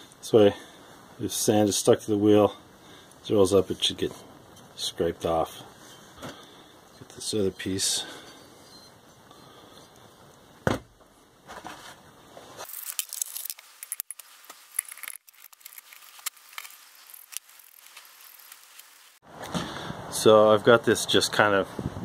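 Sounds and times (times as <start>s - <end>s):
metallic clinks and rattles: 12.6s - 18.6s.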